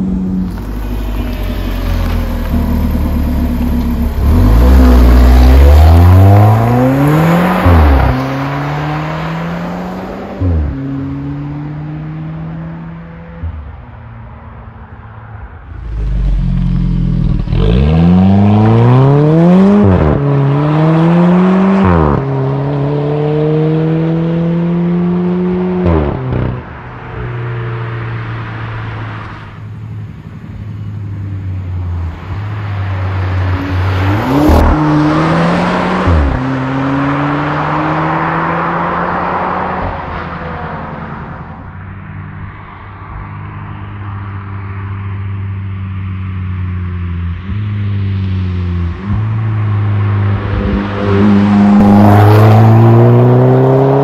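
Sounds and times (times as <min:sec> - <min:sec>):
car engine accelerating through gears: 0:00.0 - 0:13.8, 0:15.7 - 0:26.8, 0:33.2 - 0:40.5, 0:47.5 - 0:54.0.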